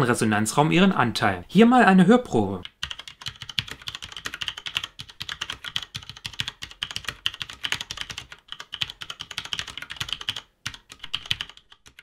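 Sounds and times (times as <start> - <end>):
mechanical keyboard typing: 2.6 - 12.0.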